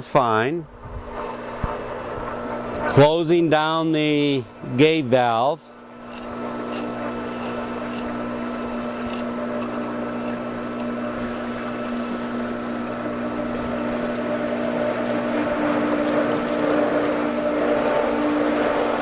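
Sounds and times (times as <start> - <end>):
pool pump motor humming: 0.0 - 19.0
water rushing through pipes: 6.0 - 19.0.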